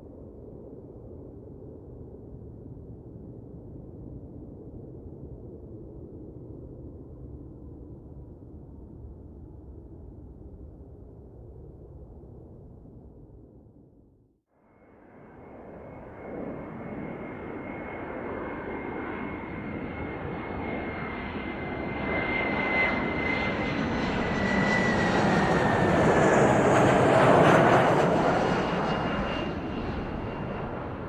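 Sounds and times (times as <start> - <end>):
jet airplane passing by: 15.2 - 31.0.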